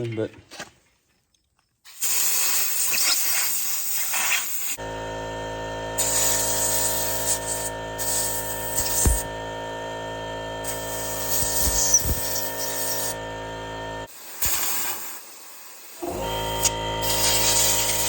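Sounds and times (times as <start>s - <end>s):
steady hum: 4.8s - 14.1s
compressed air blow gun hissing: 6.0s - 9.3s, 10.6s - 13.2s, 14.1s - 16.0s, 16.6s - 18.0s.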